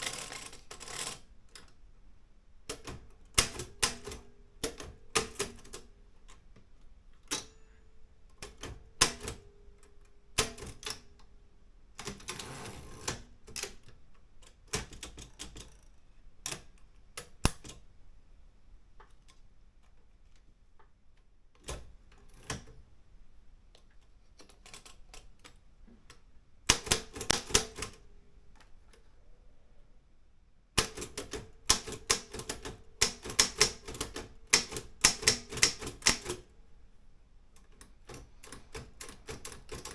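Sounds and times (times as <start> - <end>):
manual typewriter keystrokes: 0.0 - 1.8, 2.7 - 6.4, 8.4 - 11.2, 12.0 - 17.8, 24.4 - 28.0, 30.8 - 36.5, 37.6 - 39.9.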